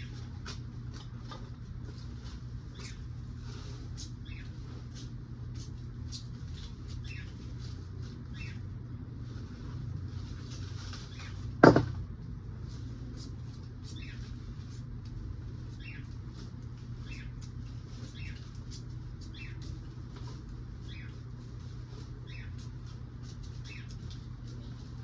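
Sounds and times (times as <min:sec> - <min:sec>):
low steady hum: 0:00.0 - 0:25.0
small birds chirping: 0:02.6 - 0:07.7, 0:08.3 - 0:08.8, 0:13.2 - 0:14.8, 0:15.6 - 0:24.8
sharp loud knock: 0:11.6 - 0:12.0.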